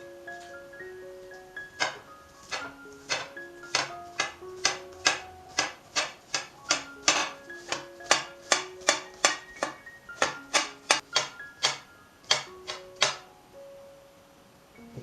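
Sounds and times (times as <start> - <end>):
bright mallet melody: 0.0 - 14.0
sharp clicking beat: 1.8 - 13.2.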